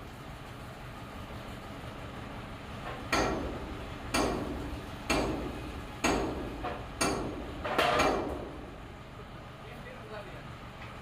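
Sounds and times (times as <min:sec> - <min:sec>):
hammer striking metal: 0:03.1 - 0:08.6.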